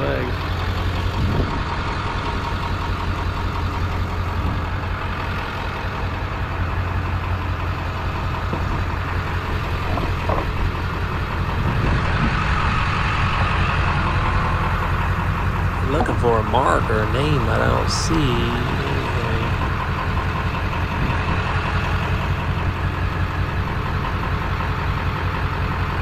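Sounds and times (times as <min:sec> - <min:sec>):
vehicle engine idling: 0:00.0 - 0:26.0.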